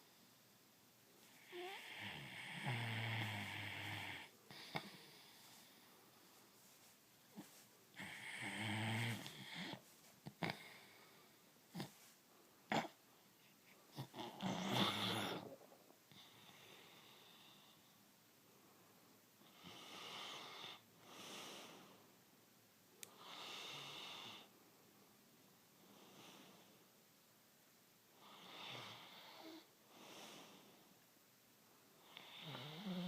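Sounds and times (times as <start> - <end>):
pet snoring and snorting: 13.9 - 15.7.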